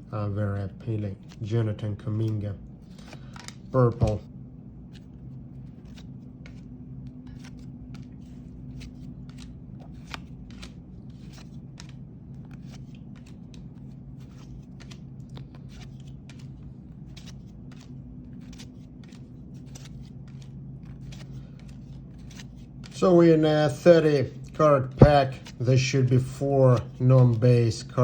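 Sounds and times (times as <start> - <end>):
trading cards flicking: 2.2 - 4.3, 5.7 - 23.0.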